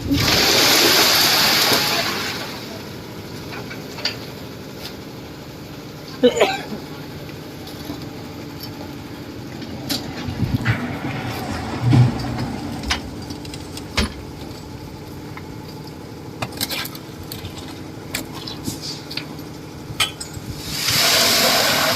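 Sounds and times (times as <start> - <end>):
engine running: 0.0 - 21.9
sharp knocks and clatter: 9.8 - 14.7.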